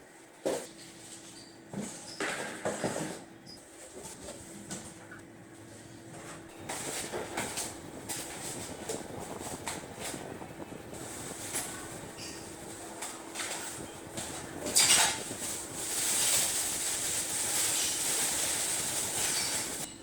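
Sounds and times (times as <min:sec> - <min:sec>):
packaging scraping and rustling: 0:11.0 - 0:19.9.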